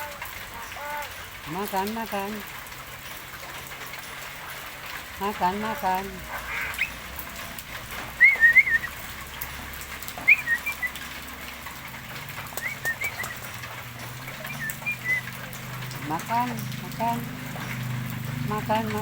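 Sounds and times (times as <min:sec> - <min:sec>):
myna whistled chirps: 0:06.8 - 0:07.0, 0:08.2 - 0:09.0, 0:10.2 - 0:11.0, 0:12.6 - 0:13.5, 0:14.4 - 0:15.3.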